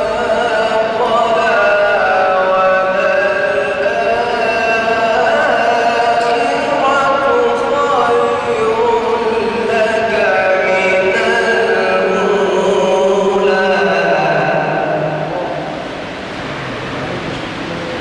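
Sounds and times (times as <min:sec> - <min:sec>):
man chanting melodic recitation: 0:00.0 - 0:15.8.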